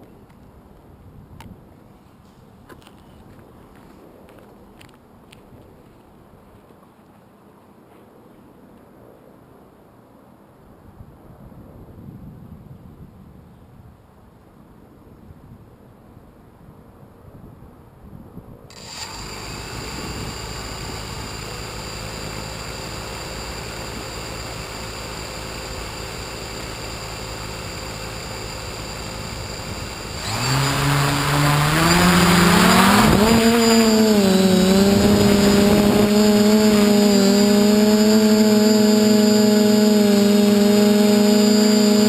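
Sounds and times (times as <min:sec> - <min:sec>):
drone motors buzzing: 0:18.7 - 0:42.0.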